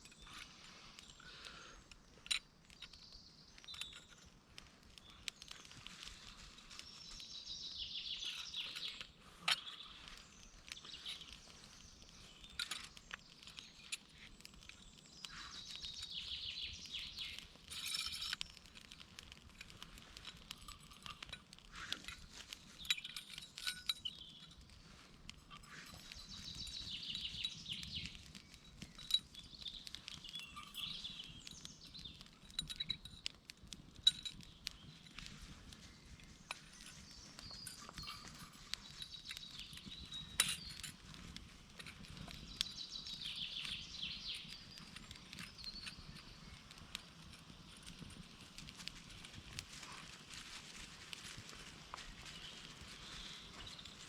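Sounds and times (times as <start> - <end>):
campfire crackling: 0.0 - 54.0.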